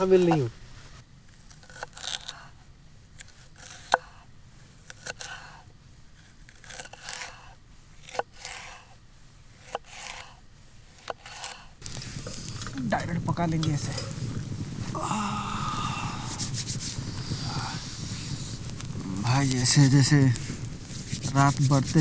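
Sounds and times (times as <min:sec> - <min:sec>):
knife cutting vegetables: 0:09.6 - 0:10.3, 0:11.0 - 0:11.7.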